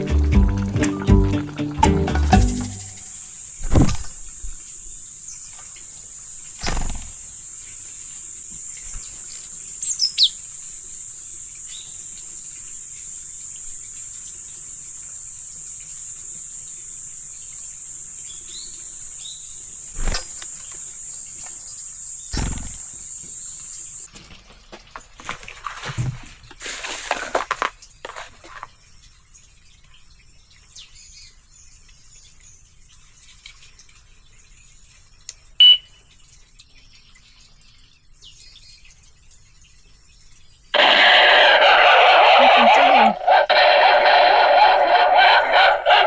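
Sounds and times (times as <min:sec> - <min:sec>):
high-pitched insect chorus: 0:02.3 - 0:03.7
falling bird chirp: 0:35.6 - 0:36.0.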